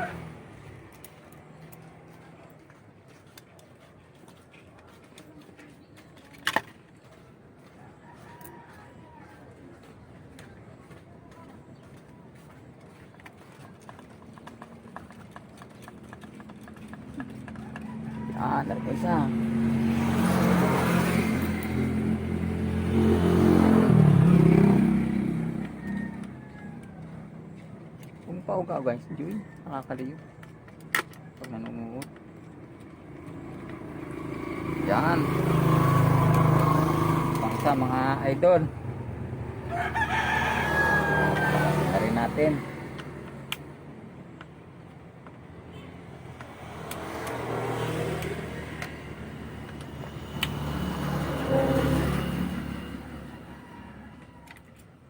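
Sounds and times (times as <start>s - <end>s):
vehicle engine revving: 0.0s - 3.3s, 14.4s - 28.1s, 32.9s - 43.9s, 45.7s - 54.5s.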